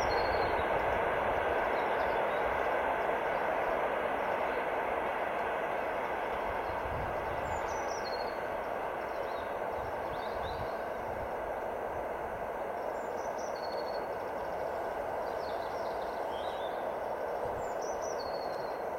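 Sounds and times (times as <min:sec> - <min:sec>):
steady rushing noise: 0:00.0 - 0:18.9
bird chirping: 0:12.8 - 0:14.6, 0:15.2 - 0:16.8, 0:17.6 - 0:18.8.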